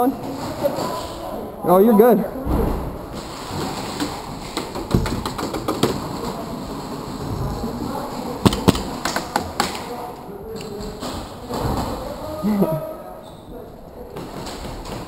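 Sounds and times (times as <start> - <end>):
pellets striking hard surfaces: 8.4 - 9.6.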